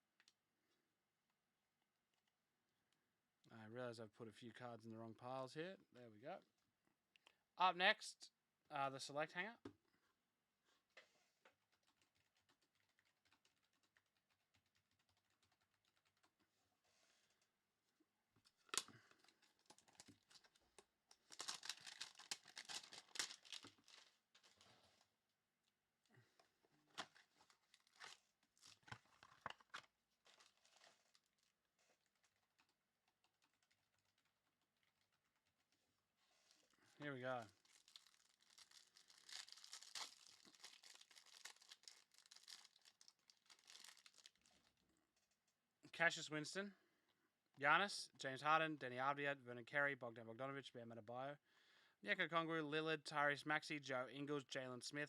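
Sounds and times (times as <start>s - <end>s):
wrapping crinkling: 18.5s - 25.1s, 26.9s - 44.8s
card pack wrapper tearing: 21.2s - 24.6s, 37.6s - 44.4s.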